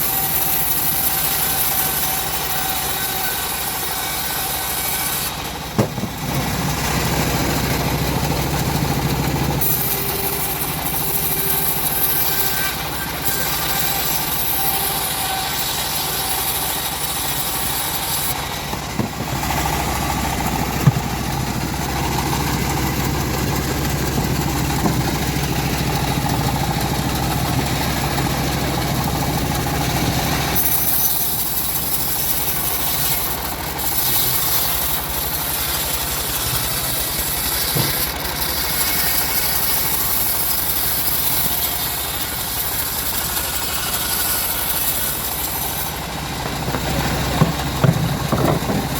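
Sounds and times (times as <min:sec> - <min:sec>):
engine-driven band sawmill running: 0:00.0 - 0:48.9
short knock: 0:05.8 - 0:06.2, 0:20.8 - 0:21.3.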